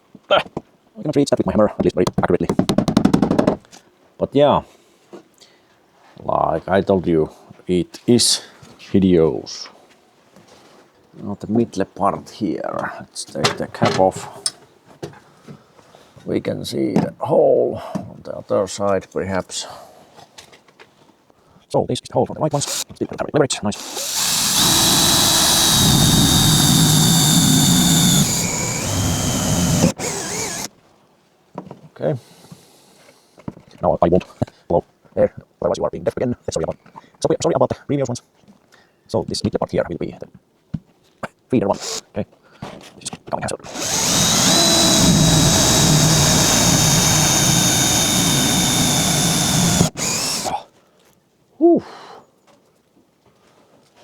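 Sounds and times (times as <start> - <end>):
air blower whining: 22.6 - 22.8, 23.8 - 30.7, 43.7 - 50.5.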